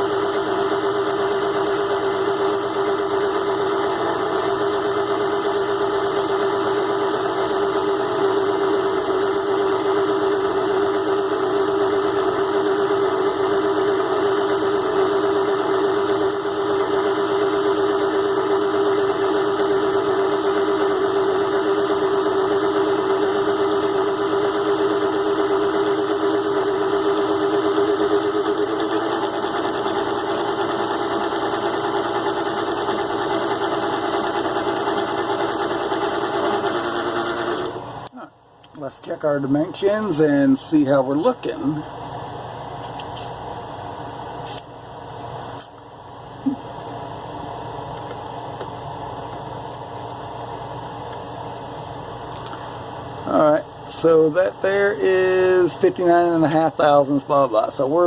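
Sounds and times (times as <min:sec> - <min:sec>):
lathe motor whining: 0:00.0 - 0:38.0.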